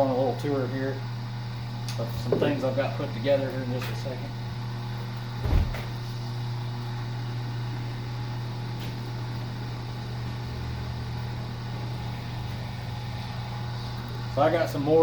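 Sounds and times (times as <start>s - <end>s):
machine humming: 0.0s - 15.0s.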